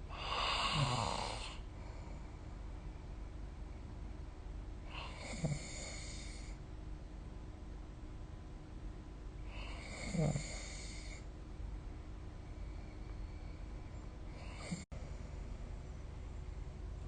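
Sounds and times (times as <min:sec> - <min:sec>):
steady low hum: 0:00.0 - 0:17.0
person snoring: 0:00.1 - 0:01.6, 0:04.9 - 0:06.6, 0:09.5 - 0:11.2, 0:14.4 - 0:14.9.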